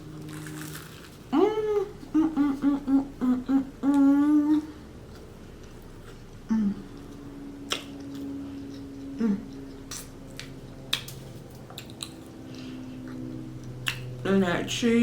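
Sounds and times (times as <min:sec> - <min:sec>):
chewing crispy food: 0:00.0 - 0:02.2, 0:04.5 - 0:14.2
person humming mm: 0:01.3 - 0:04.8, 0:06.4 - 0:07.2, 0:09.0 - 0:09.9.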